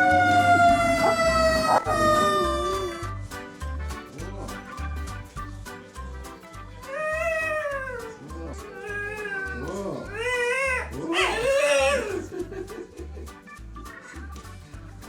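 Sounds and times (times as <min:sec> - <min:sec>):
cat meowing: 0:00.0 - 0:03.1, 0:08.8 - 0:12.2
background music with steady beat: 0:00.0 - 0:15.0.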